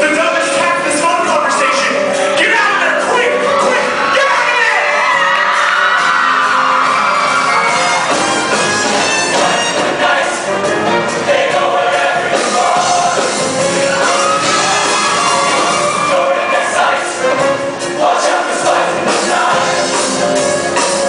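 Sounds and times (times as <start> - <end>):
instrumental accompaniment: 0.0 - 21.0
choir singing in parts: 5.2 - 21.0.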